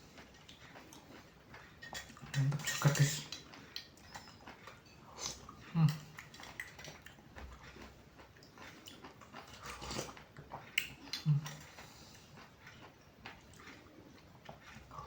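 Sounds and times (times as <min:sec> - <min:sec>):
chewing and mouth sounds: 0:00.0 - 0:15.0.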